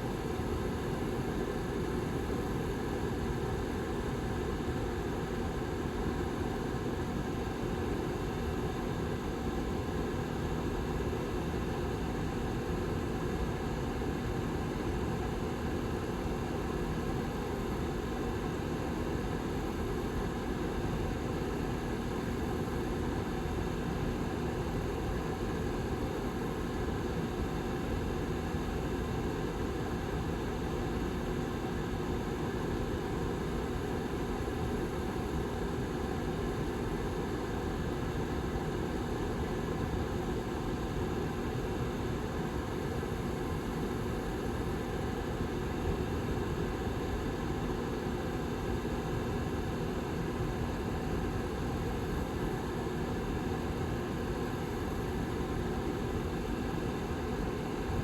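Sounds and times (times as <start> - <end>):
heater fan air rush: 14.1 - 58.0.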